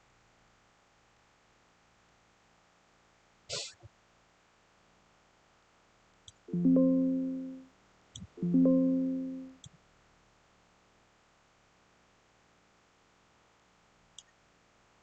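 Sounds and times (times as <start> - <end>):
electronic alert chime: 6.5 - 7.6, 8.4 - 9.6
faint click: 14.1 - 14.4.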